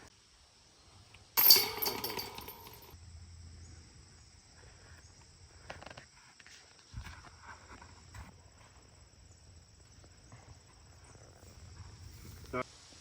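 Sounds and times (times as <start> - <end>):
metal chains jingling: 1.4 - 3.0.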